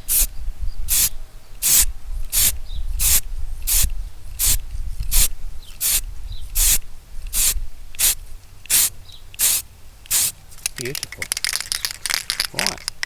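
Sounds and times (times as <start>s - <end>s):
aerosol spray hisses: 0.1s - 0.3s, 0.9s - 10.4s
wind rumble on microphone: 0.2s - 8.0s.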